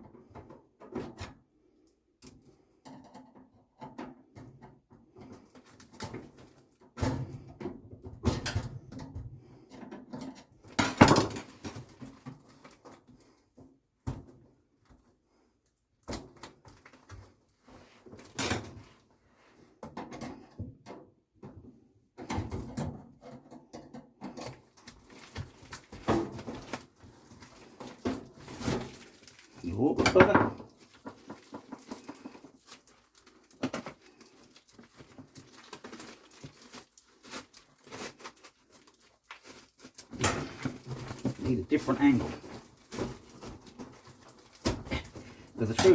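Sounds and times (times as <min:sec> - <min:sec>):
knocks and scrapes of handling: 0:16.1 - 0:45.9.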